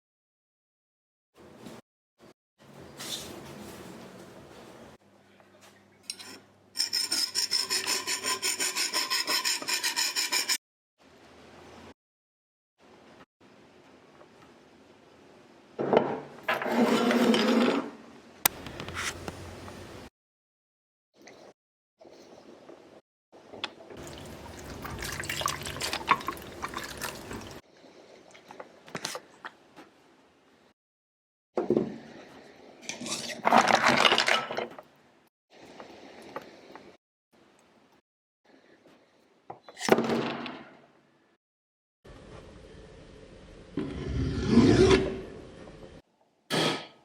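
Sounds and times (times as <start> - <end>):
rapid rasping strokes: 6.8 - 10.6
water splashing and dripping: 24.0 - 27.6.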